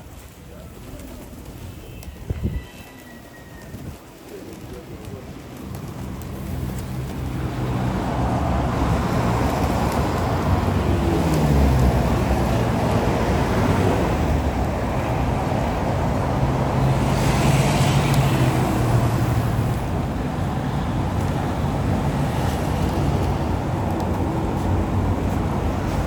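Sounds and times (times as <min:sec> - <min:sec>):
road traffic rumble: 0:03.6 - 0:26.0
vehicle passing: 0:06.4 - 0:26.0.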